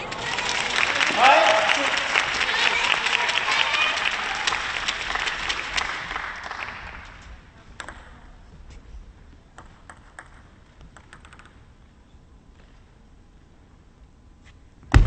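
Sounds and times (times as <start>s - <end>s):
crowd applause: 0.0s - 7.2s.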